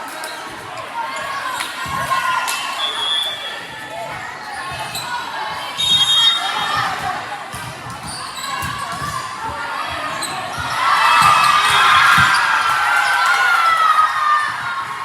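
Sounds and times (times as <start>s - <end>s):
ball thumping on court floor: 6.8s - 9.6s, 12.0s - 12.4s.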